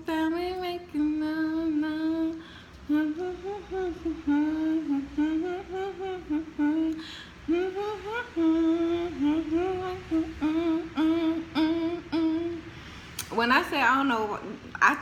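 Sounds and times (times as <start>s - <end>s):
woman humming a melody: 0.0s - 12.8s.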